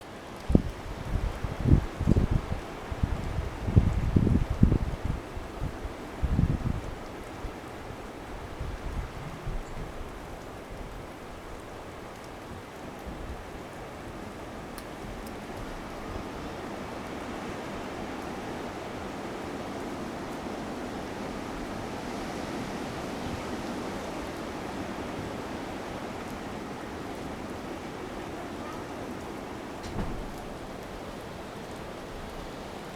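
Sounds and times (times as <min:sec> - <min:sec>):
rain: 0:00.0 - 0:32.9
storm wind buffeting microphone: 0:00.4 - 0:11.0, 0:29.8 - 0:30.9
strong wind: 0:00.4 - 0:11.6, 0:15.0 - 0:31.1.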